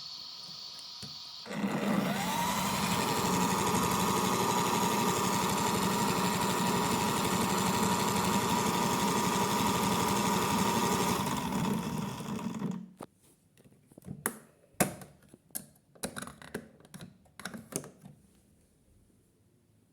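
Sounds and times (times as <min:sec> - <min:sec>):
toy washing machine motor whine: 0:00.0 - 0:12.9.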